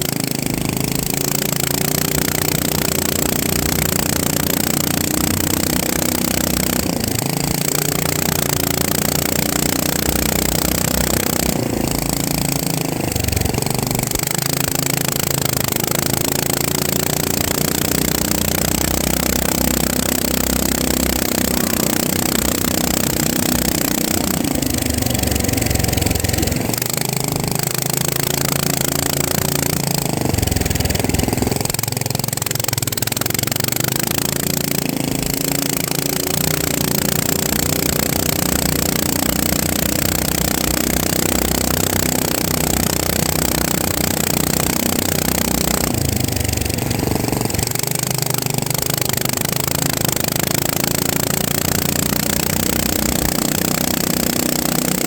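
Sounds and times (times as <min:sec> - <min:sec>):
drone motors buzzing: 0:01.3 - 0:32.2.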